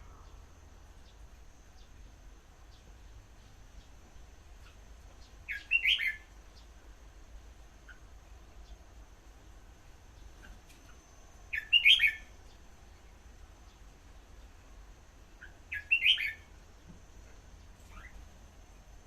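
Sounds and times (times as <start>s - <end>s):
bird singing warbled phrases: 4.6s - 6.7s, 11.5s - 12.6s, 15.4s - 16.5s.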